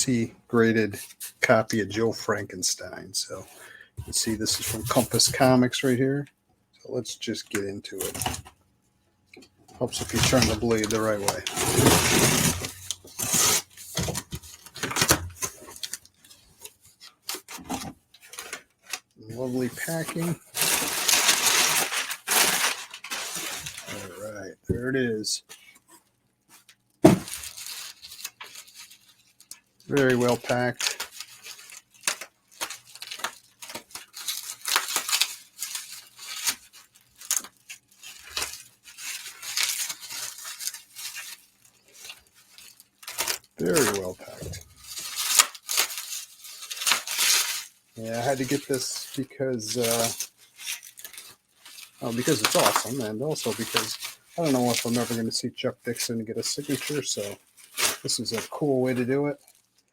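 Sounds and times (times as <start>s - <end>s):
packing material crinkling: 3.3s - 5.8s, 9.8s - 24.4s, 26.6s - 59.9s
box being handled: 9.9s - 15.8s, 27.0s - 27.5s
packing material tearing: 9.9s - 16.1s, 18.2s - 24.3s, 27.1s - 59.8s.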